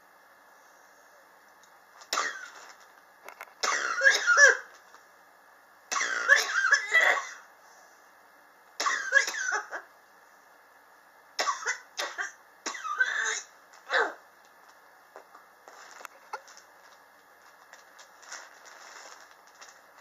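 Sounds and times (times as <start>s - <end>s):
person coughing: 3.6s - 4.7s, 8.8s - 9.9s, 11.4s - 14.2s.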